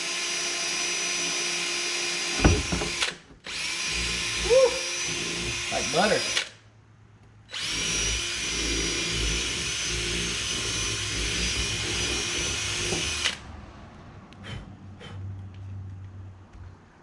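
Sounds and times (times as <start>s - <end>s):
cordless drill drilling: 0.0s - 6.6s, 7.5s - 13.5s.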